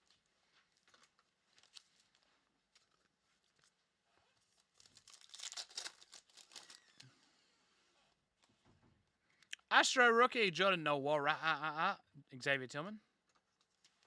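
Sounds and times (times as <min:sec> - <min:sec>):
wrapper crackling: 0:00.0 - 0:03.8, 0:04.4 - 0:07.2.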